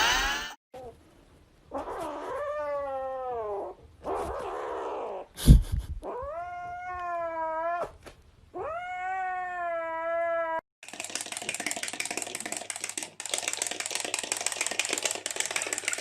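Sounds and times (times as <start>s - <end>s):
cat yowling: 8.6s - 10.6s.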